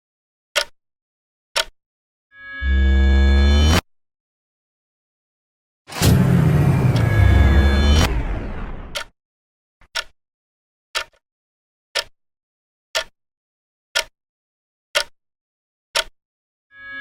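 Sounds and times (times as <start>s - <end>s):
clock ticking: 0.6s - 0.8s, 8.9s - 9.1s, 9.9s - 10.1s, 11.0s - 11.2s, 13.0s - 13.2s, 15.0s - 15.2s
time-stop sound effect: 2.6s - 3.8s, 5.9s - 9.1s.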